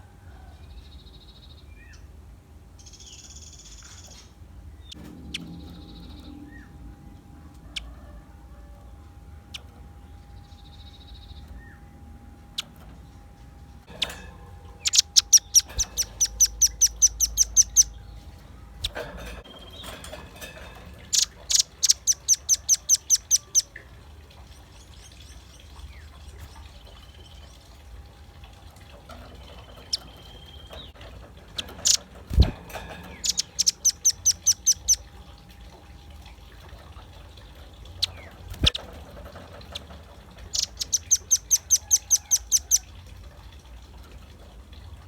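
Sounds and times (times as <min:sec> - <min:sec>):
bird high chip notes: 0:09.4 - 0:23.7, 0:31.6 - 0:35.4.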